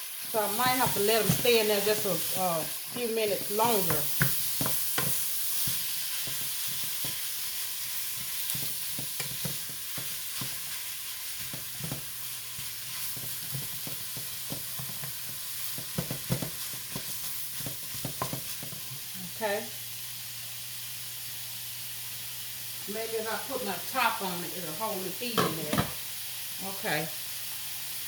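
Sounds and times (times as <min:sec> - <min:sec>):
meat sizzling in a pot: 0:00.0 - 0:28.0
utensil stirring and knocking pot: 0:00.3 - 0:07.3, 0:08.0 - 0:19.1, 0:25.4 - 0:26.0.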